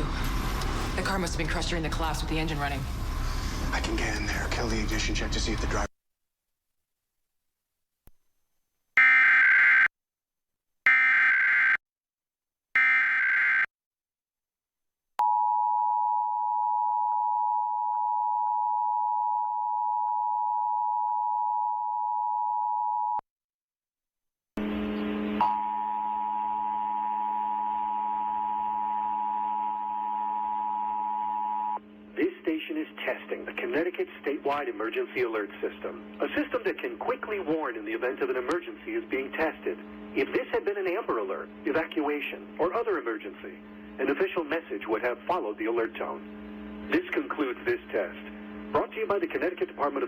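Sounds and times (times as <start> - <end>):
steady tone with low buzz: 24.6 - 50.0.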